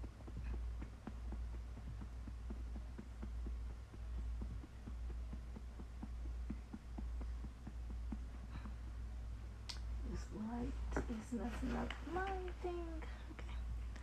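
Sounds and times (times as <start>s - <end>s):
low rumble: 0.0s - 14.0s.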